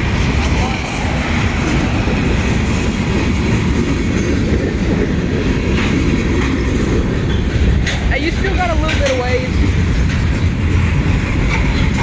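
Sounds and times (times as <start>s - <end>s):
train wheels rumbling and clattering: 0.0s - 12.0s.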